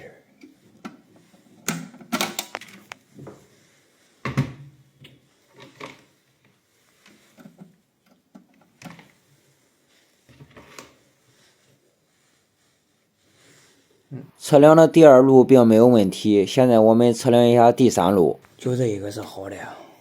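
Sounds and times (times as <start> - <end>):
clicks and knocks of handling wires: 0.4 - 3.4, 7.0 - 9.2.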